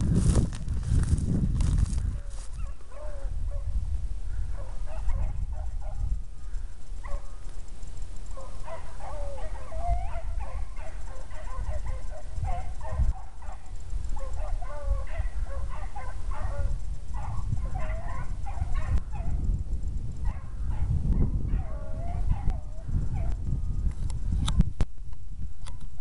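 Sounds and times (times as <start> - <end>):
hounds baying: 2.2 - 3.7, 4.4 - 6.2, 6.9 - 7.6, 8.2 - 19.4, 20.2 - 23.4.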